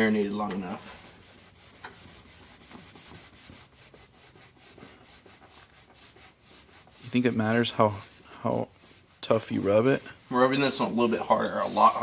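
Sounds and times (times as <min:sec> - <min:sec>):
cloth scrubbing plastic: 0:00.0 - 0:12.0.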